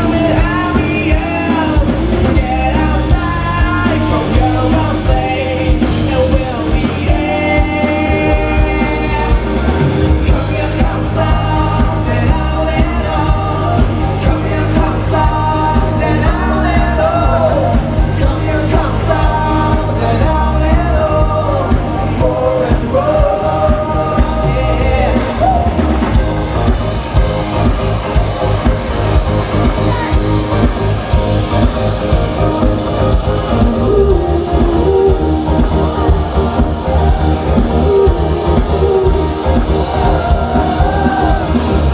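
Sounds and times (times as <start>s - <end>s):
bass guitar: 0.0s - 41.9s
drums: 0.0s - 41.9s
electric guitars: 0.0s - 41.9s
lead vocals singing: 0.0s - 41.9s.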